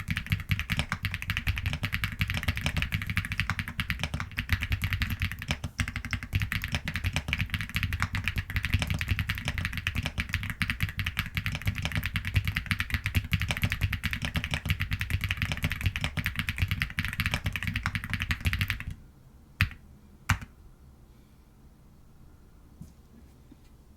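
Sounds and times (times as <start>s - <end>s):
mechanical keyboard typing: 0.0s - 19.0s, 19.6s - 20.5s.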